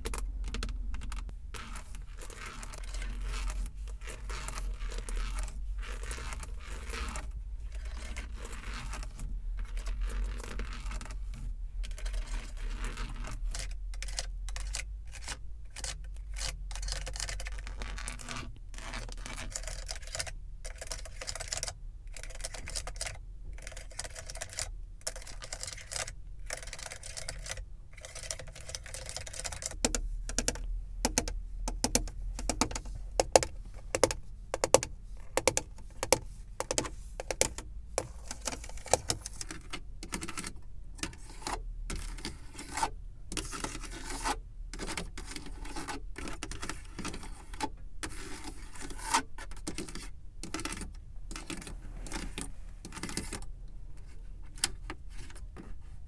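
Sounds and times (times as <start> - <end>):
fingers tapping on car surfaces: 29.8 - 37.6.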